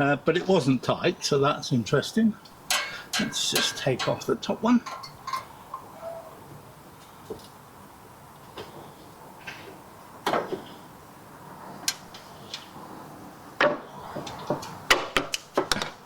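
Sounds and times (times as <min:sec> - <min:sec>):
small metallic clinks: 0:02.7 - 0:05.9.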